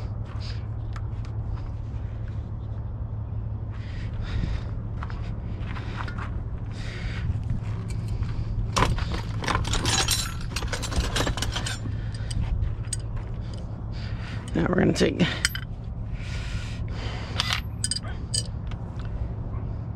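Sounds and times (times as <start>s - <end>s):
low hum: 0.0s - 19.9s
metal tools clinking and rattling: 8.8s - 13.7s, 14.3s - 15.7s, 17.4s - 18.6s.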